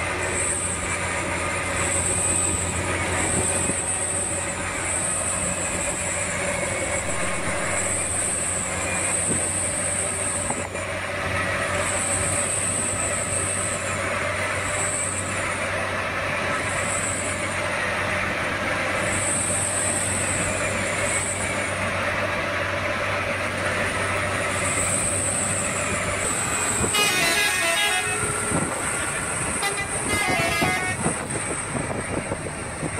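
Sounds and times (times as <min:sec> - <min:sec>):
toy bus horn tooting: 0:26.6 - 0:31.5.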